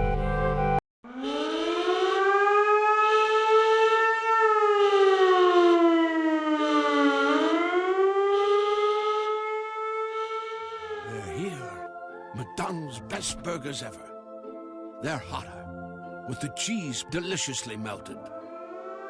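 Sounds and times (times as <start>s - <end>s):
warning siren wailing: 1.1s - 13.2s, 18.2s - 19.0s.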